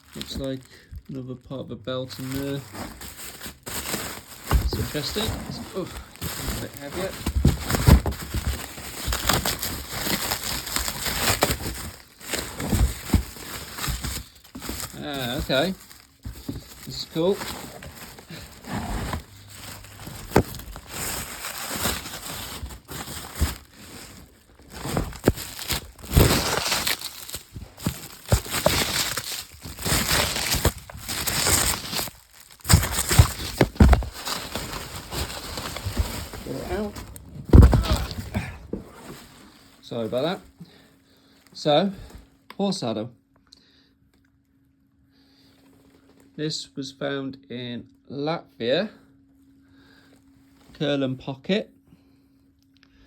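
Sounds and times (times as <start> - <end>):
packing material crinkling: 0.0 - 40.4
cardboard box rustling: 2.1 - 40.4
knocks and bumps: 32.6 - 39.0.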